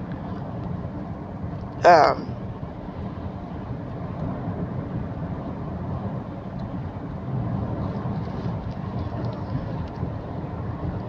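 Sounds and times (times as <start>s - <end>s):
car road noise rumble: 0.0s - 11.0s.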